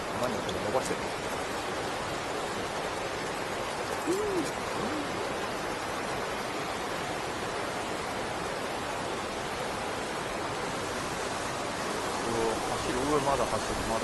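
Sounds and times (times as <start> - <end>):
water rushing over a weir: 0.0 - 14.0
low hoot-like sounds: 4.0 - 5.4.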